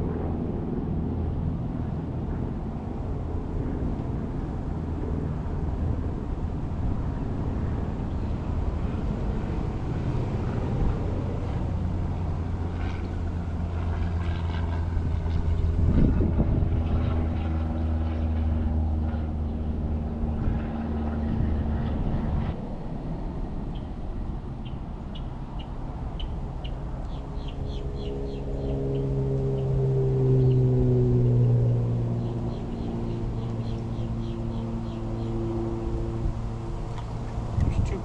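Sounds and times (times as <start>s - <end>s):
engine humming: 23.3s - 38.0s.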